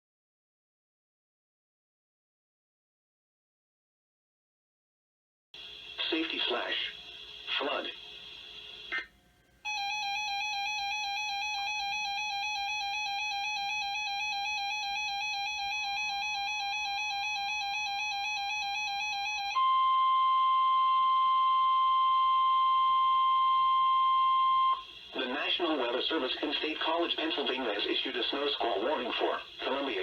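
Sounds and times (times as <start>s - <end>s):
steady warning alarm tone: 9.7s - 25.0s.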